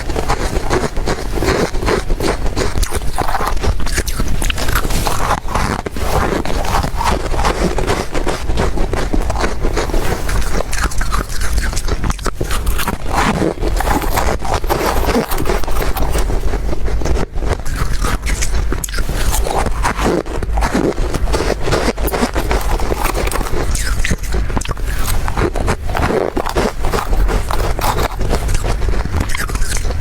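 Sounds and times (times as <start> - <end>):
ice being chewed: 0.0 - 30.0.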